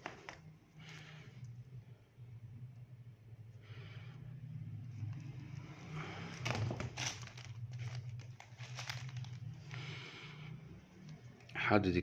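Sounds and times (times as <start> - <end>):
steady low hum: 0.0 - 11.6
cables rustling: 4.8 - 11.6.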